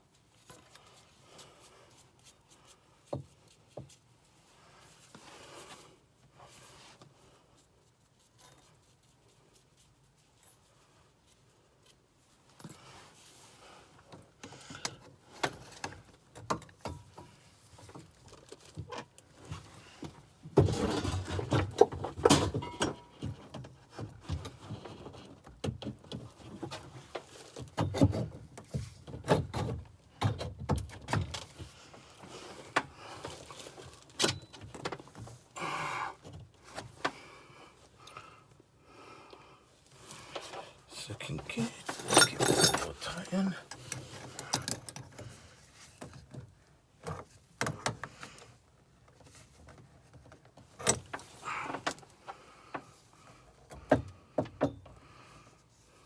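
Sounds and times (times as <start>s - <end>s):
metal fittings and tools clinking: 41.8s - 45.0s.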